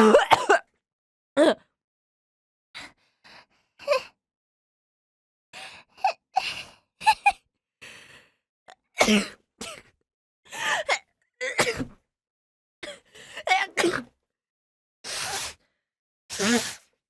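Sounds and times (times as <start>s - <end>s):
woman sneezing and gasping: 12.8s - 14.2s, 15.1s - 15.6s, 16.3s - 16.9s.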